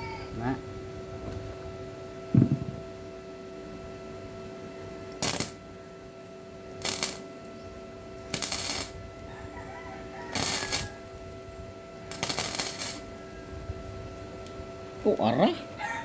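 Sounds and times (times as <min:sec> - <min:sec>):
steady hum: 0:00.0 - 0:15.9
dull thump: 0:02.4 - 0:02.8
arc welding crackling hiss: 0:05.2 - 0:05.8, 0:06.7 - 0:07.4, 0:08.2 - 0:09.2, 0:10.2 - 0:13.3.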